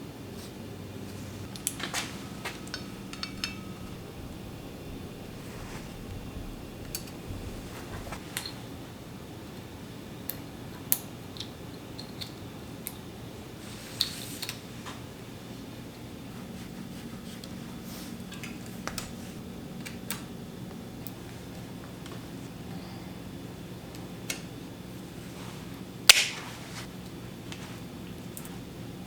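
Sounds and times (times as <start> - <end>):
steady low hum: 0.0 - 29.0
tools and bike parts clicking: 1.4 - 4.2, 10.3 - 13.0.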